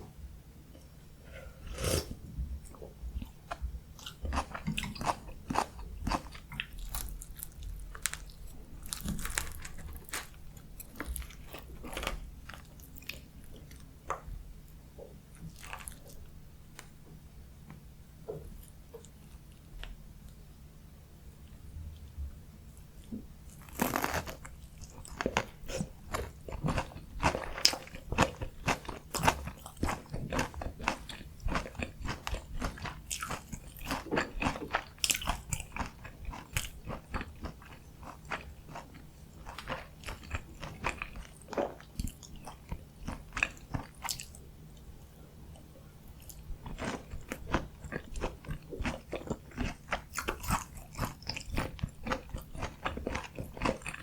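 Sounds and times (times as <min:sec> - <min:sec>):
crunchy chewing: 0:03.2 - 0:14.2, 0:22.8 - 0:44.4, 0:46.1 - 0:54.0.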